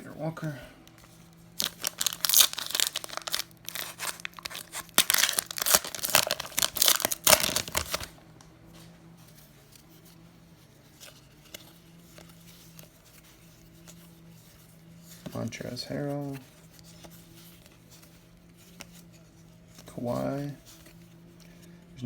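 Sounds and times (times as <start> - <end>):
cards being handled: 0.8 - 22.0
foil wrapper tearing and crinkling: 1.6 - 8.1.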